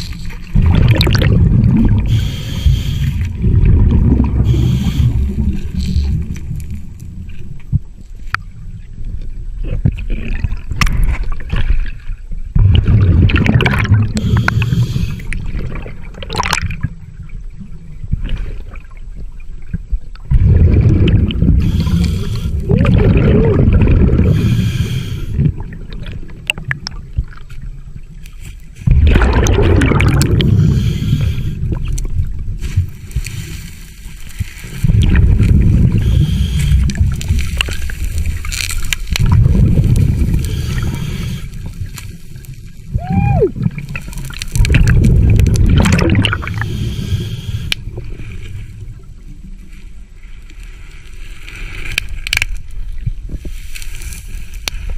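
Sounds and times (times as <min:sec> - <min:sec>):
diver exhaling bubbles: 0:00.0 - 0:06.5, 0:12.5 - 0:16.9, 0:20.3 - 0:26.1, 0:28.8 - 0:32.0, 0:34.6 - 0:42.0, 0:42.9 - 0:48.1
diver inhaling through regulator: 0:01.9 - 0:03.4, 0:04.2 - 0:06.1, 0:14.1 - 0:15.4, 0:21.5 - 0:23.2, 0:24.0 - 0:25.5, 0:30.0 - 0:31.8, 0:35.5 - 0:37.9, 0:40.0 - 0:41.8, 0:46.3 - 0:48.4.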